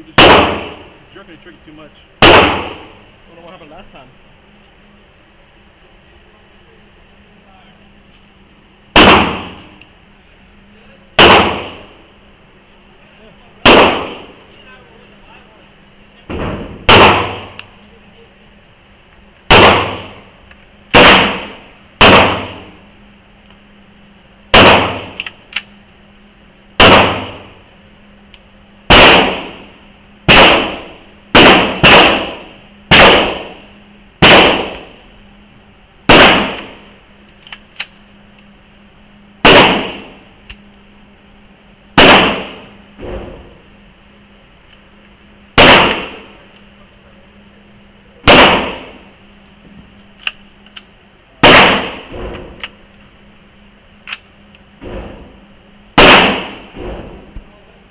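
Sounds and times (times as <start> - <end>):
gunshots echoing: 0.1 - 0.9, 2.2 - 3.0, 9.0 - 9.7, 11.2 - 11.9, 13.6 - 14.4, 16.3 - 17.6, 19.5 - 20.2, 20.9 - 22.7, 24.5 - 25.2, 26.8 - 27.5, 28.9 - 29.7, 30.3 - 33.6, 34.2 - 34.9, 36.1 - 36.8, 39.4 - 40.2, 42.0 - 43.5, 45.6 - 46.4, 48.3 - 49.0, 51.4 - 52.6, 56.0 - 57.3.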